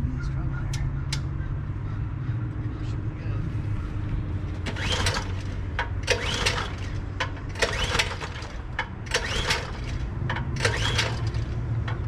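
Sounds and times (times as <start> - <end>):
pull-starter click and whirr: 4.6 - 12.0.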